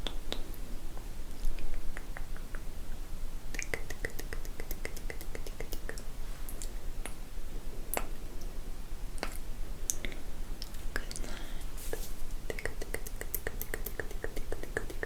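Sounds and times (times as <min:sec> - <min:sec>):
wet mouth clicks: 0:03.5 - 0:07.2, 0:09.2 - 0:11.3, 0:12.5 - 0:15.0.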